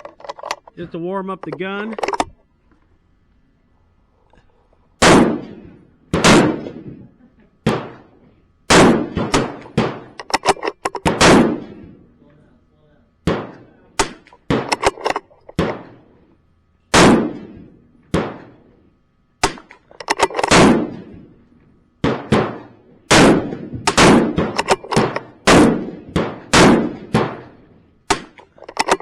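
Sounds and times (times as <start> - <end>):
rifle shots cracking: 5.0 - 7.0, 7.6 - 12.0, 13.2 - 16.1, 16.9 - 18.7, 19.4 - 21.4, 22.0 - 29.0.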